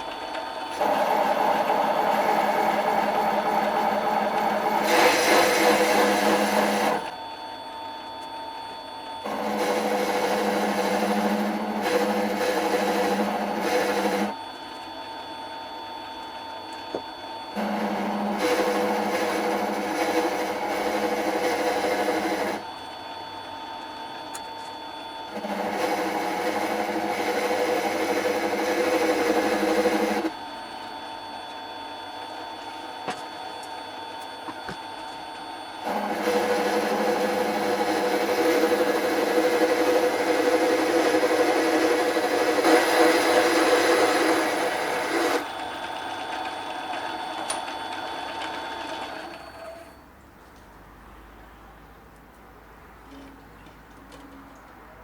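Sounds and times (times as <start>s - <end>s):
mini lathe motor running: 0.7s - 7.1s, 9.2s - 14.4s, 17.6s - 22.7s, 25.3s - 30.4s, 35.8s - 49.9s.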